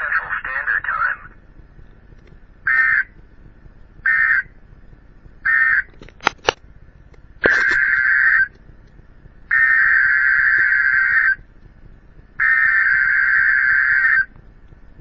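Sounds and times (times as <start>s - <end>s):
buzzy warbling data tone bursts: 9.5s - 11.4s, 12.4s - 14.3s.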